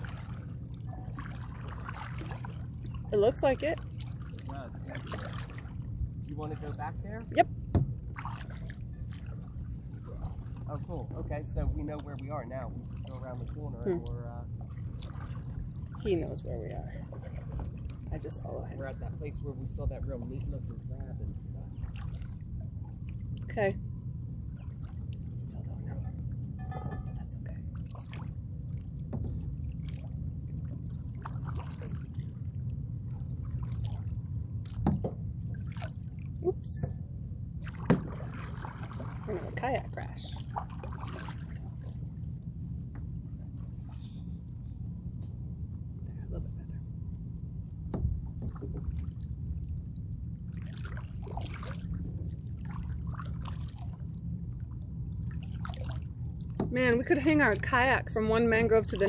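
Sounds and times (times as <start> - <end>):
paddle splashing and dripping water: 0.0 - 45.9, 47.4 - 57.0
steady low rumble: 0.0 - 59.0.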